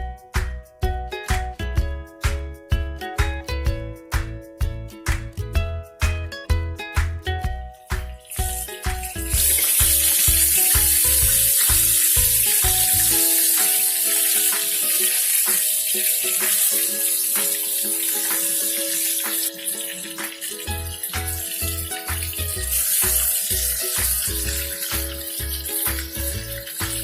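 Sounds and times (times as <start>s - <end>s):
background music: 0.0s - 27.0s
food sizzling in oil: 8.0s - 27.0s.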